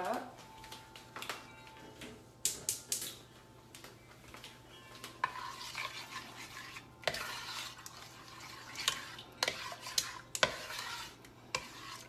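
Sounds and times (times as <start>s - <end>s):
spoon stirring thick sauce: 4.8s - 12.0s.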